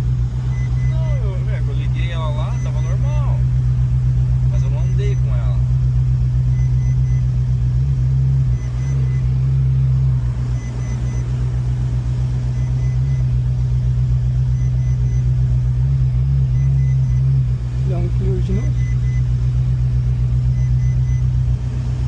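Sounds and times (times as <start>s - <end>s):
car engine idling unevenly: 0.0s - 22.0s
faint electronic beeps: 0.5s - 3.5s, 4.5s - 5.6s, 6.4s - 7.4s, 8.4s - 11.4s, 12.4s - 13.4s, 14.4s - 15.5s, 16.1s - 19.3s, 20.4s - 21.4s.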